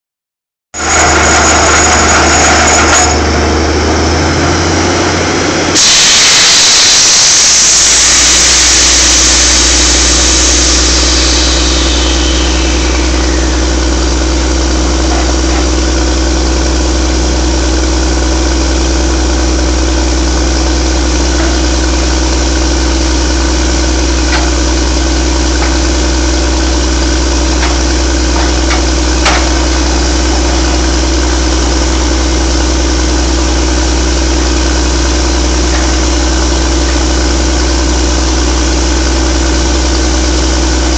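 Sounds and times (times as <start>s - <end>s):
drill rig engine humming: 0.8s - 40.9s
loud hiss: 5.8s - 16.1s.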